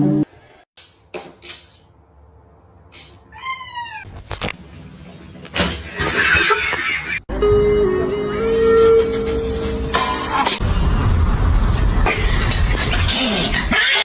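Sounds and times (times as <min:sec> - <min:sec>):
cat meowing: 0:03.3 - 0:04.1.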